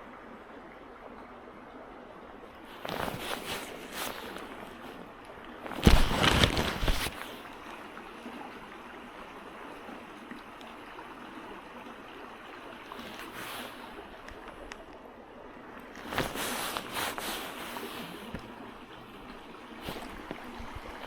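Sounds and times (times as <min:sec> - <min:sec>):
creek water running: 0:00.0 - 0:21.0.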